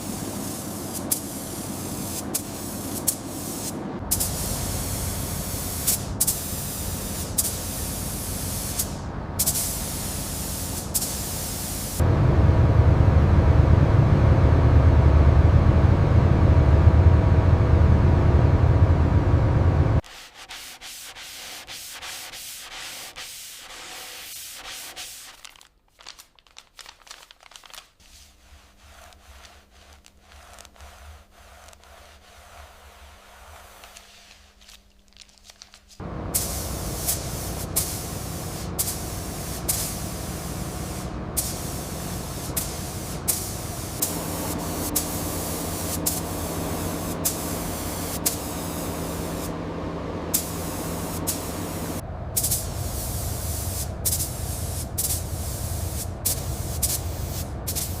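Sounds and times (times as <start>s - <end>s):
compressed air hissing: 0.0s - 12.0s, 36.0s - 49.6s, 50.3s - 58.0s
sanding rubbing: 28.0s - 34.6s
faint steady hum: 36.0s - 58.0s.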